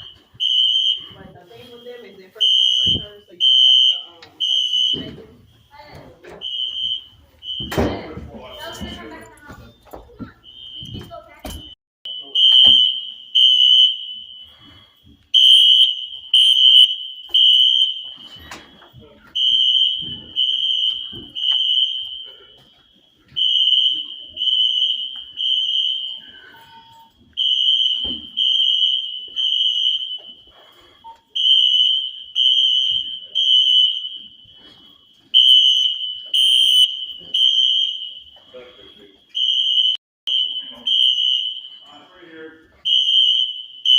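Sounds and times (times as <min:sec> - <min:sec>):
fire alarm horn blasts: 0:00.0 - 0:09.4, 0:10.4 - 0:43.9.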